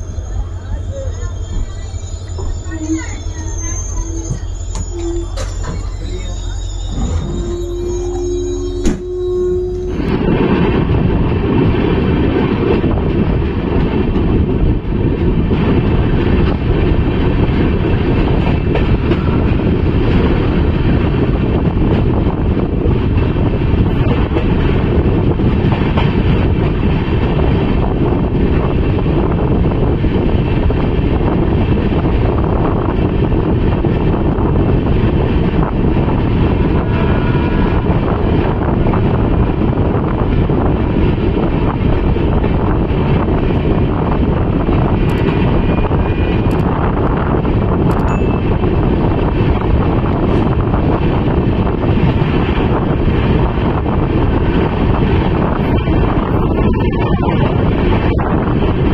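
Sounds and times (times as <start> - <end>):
train rumble: 0.0 - 58.9
wind rushing over microphone: 0.0 - 58.9.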